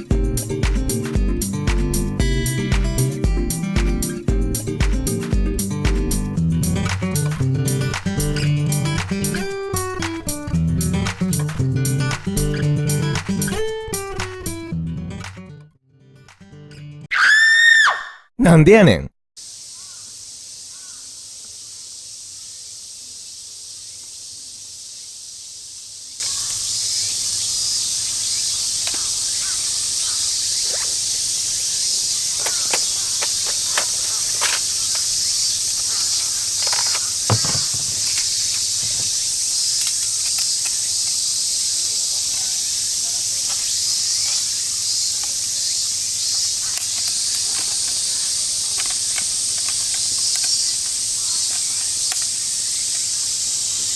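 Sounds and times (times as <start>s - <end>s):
high-pitched insect chorus: 19.4s - 53.9s.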